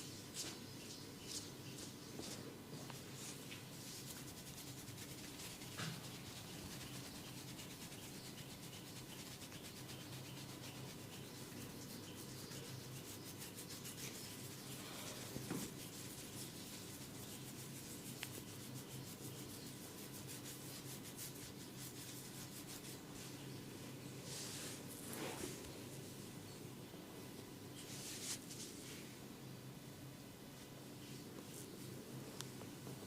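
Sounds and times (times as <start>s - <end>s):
faint steady hum: 0.0s - 33.0s
hands rubbing on skin and hair: 1.3s - 23.5s, 24.2s - 26.2s, 27.8s - 29.0s.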